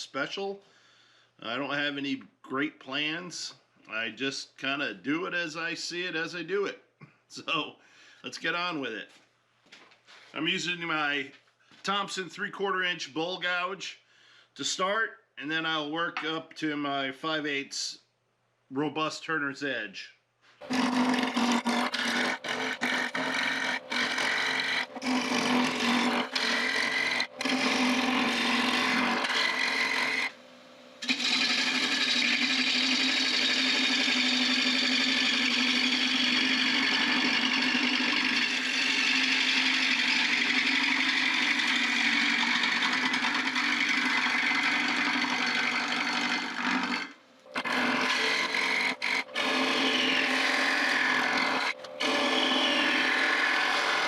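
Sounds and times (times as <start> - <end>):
lathe motor hum: 20.6 - 54.0.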